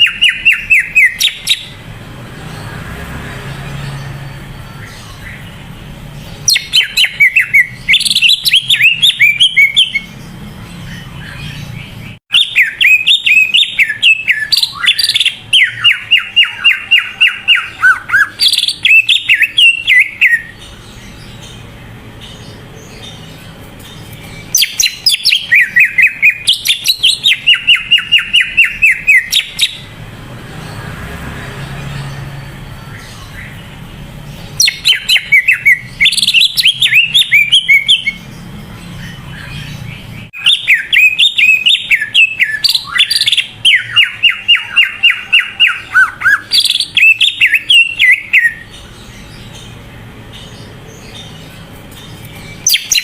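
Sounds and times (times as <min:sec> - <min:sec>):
bird singing rapid chirps: 0:00.0 - 0:53.0.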